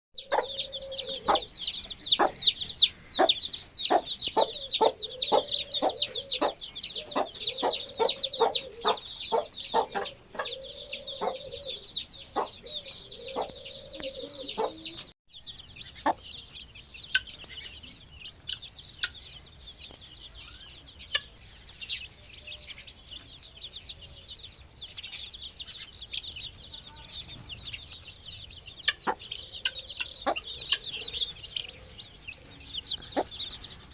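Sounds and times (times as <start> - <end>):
chicken clucking: 0.2 - 15.1, 28.8 - 33.9
chicks peeping: 0.2 - 33.9.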